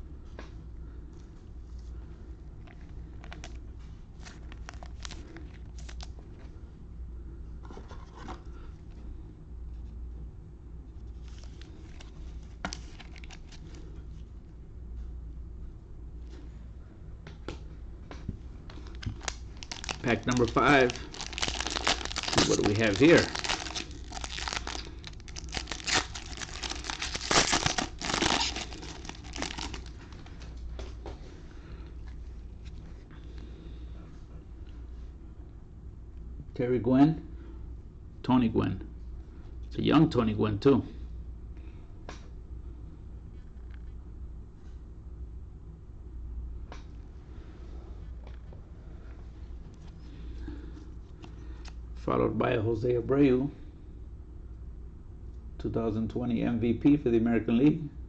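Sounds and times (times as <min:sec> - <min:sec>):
low steady hum: 0:00.0 - 0:58.0
cards and wrappers rubbing: 0:11.2 - 0:13.7, 0:18.8 - 0:30.3.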